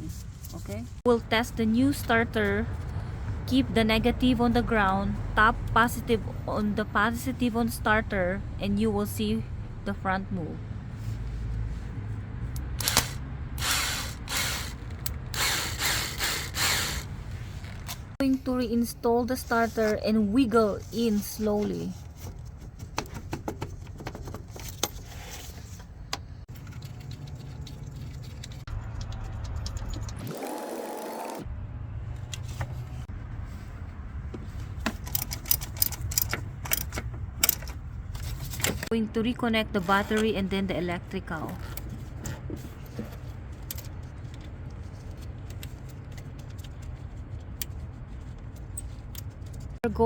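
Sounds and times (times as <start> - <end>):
metal clicks and rattling: 34.8 - 38.9.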